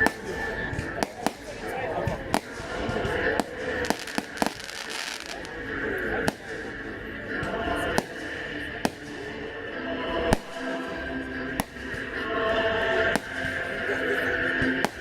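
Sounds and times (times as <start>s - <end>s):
background music: 0.0s - 15.0s
fireworks bangs: 2.3s - 5.6s.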